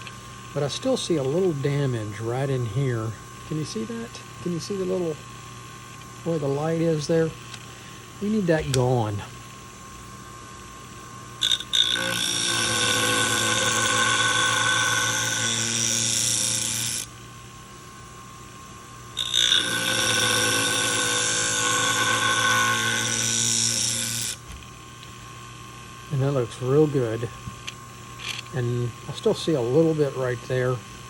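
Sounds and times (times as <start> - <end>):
motor hum: 0.0 - 31.0
blade grinding on sharpener wheel: 11.4 - 17.1, 19.2 - 24.4.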